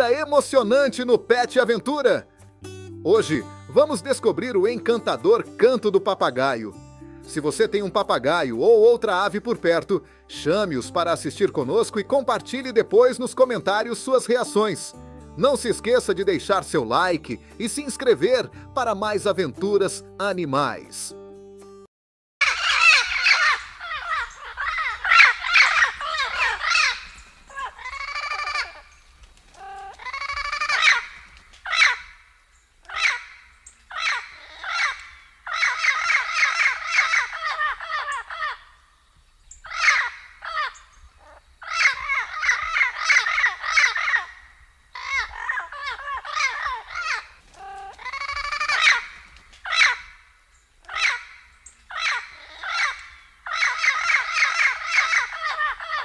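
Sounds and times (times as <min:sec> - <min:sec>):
parrot calling: 0:22.4 - 0:29.0, 0:29.6 - 0:32.2, 0:32.8 - 0:38.8, 0:39.6 - 0:50.2, 0:50.8 - 0:56.0.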